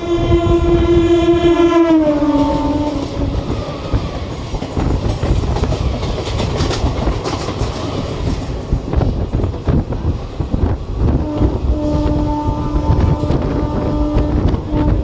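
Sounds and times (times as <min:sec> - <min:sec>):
passing train horn: 0:00.0 - 0:04.0, 0:11.1 - 0:15.0
train wheels rumbling on rails: 0:00.0 - 0:15.0
clicks at rail joints: 0:03.9 - 0:10.8.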